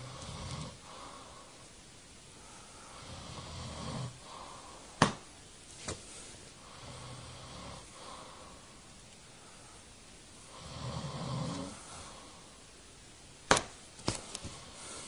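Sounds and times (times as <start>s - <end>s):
man snoring: 0.0s - 1.0s, 2.9s - 4.3s, 6.6s - 8.2s, 10.5s - 11.8s.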